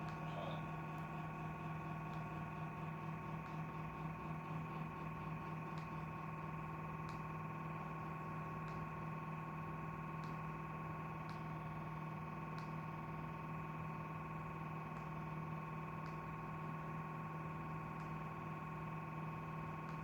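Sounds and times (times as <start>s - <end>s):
refrigerator humming: 0.0s - 8.7s.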